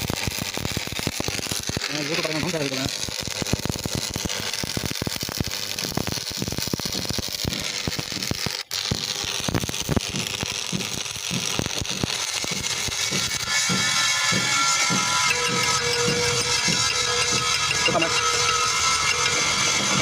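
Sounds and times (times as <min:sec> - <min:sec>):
arc welding crackle and hiss: 0:00.0 - 0:20.0.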